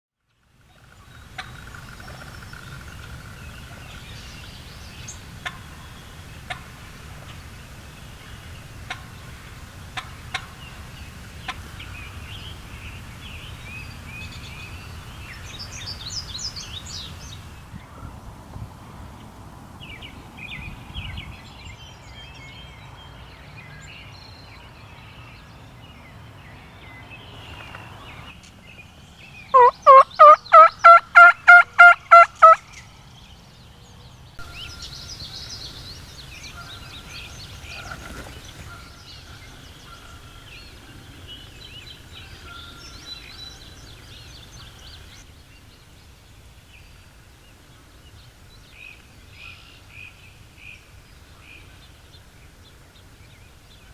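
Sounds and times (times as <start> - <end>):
faint songbird calls: 0.6 - 18.3, 26.9 - 53.9
turkey gobbling: 6.4 - 7.4, 29.6 - 32.6.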